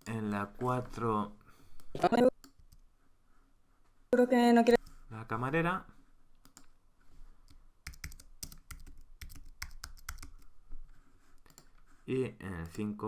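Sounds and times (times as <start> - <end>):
typing on keyboard: 7.8 - 10.5.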